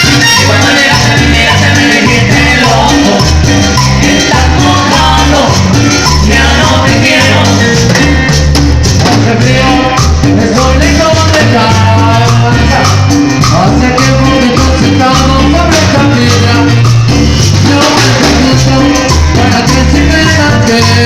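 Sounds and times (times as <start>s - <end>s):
latin dance music band: 0.0s - 21.0s.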